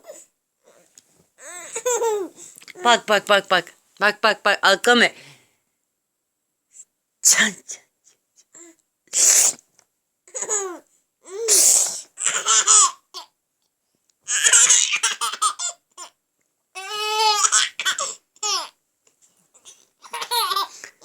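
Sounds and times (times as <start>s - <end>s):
baby giggling: 1.4s - 2.4s, 10.3s - 10.8s, 20.0s - 20.8s.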